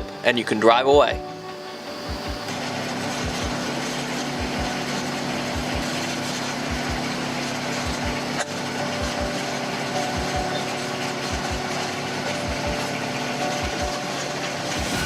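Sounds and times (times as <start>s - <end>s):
tractor diesel engine running: 2.0s - 15.0s.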